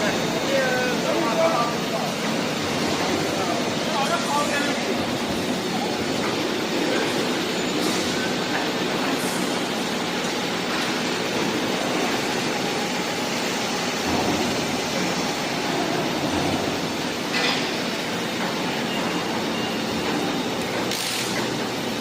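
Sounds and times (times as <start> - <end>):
factory machinery rumble: 0.0 - 22.0
sharp machine noises: 19.9 - 21.8.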